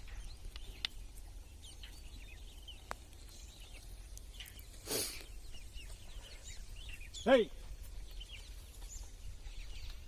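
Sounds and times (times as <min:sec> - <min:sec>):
small birds chirping: 0:00.0 - 0:10.0.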